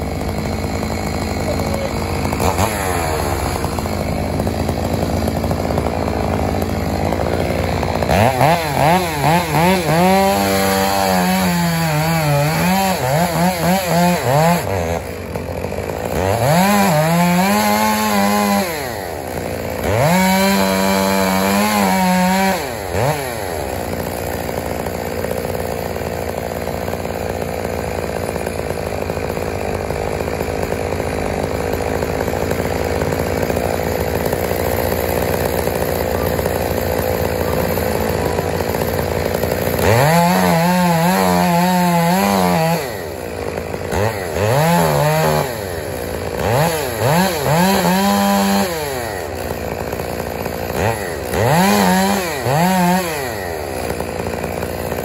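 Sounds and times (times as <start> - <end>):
high-revving engine under load: 0.0 - 55.0.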